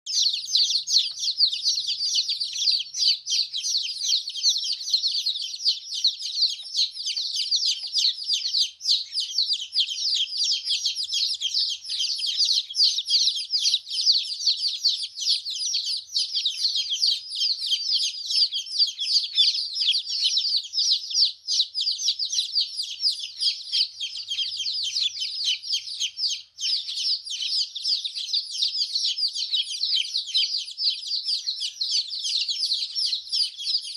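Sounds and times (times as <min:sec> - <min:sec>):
baby chicks peeping: 0:00.0 - 0:33.9.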